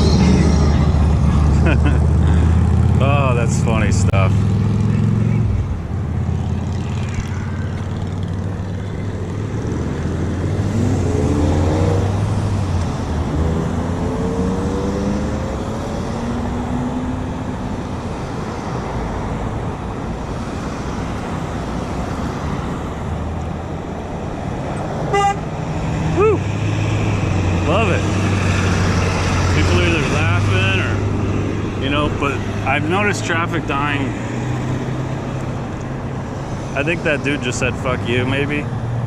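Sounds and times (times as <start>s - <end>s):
vehicle engines running: 0.0s - 39.0s
car horn honk: 25.1s - 25.5s.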